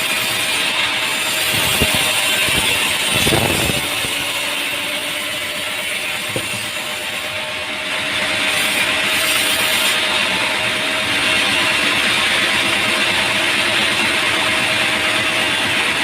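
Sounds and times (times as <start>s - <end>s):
sawmill machinery running: 0.0s - 16.0s
timber knocks and clatters: 6.2s - 6.8s.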